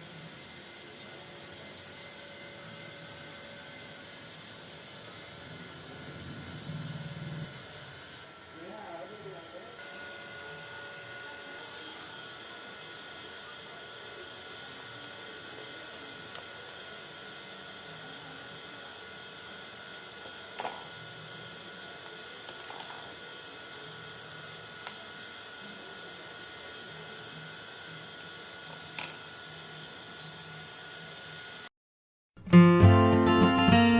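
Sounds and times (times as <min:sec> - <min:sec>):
electric hand mixer whining: 0:00.0 - 0:31.7.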